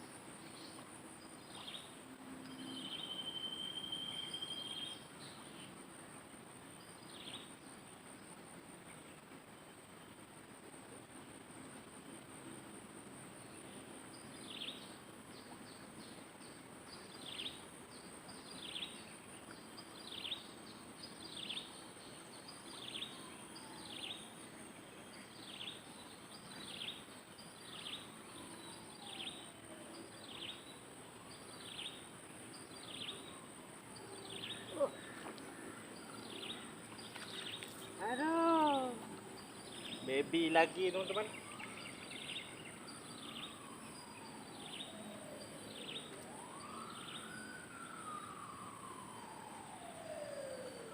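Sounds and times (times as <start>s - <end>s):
high insect drone: 0.0s - 50.9s
bird calling: 34.2s - 40.2s.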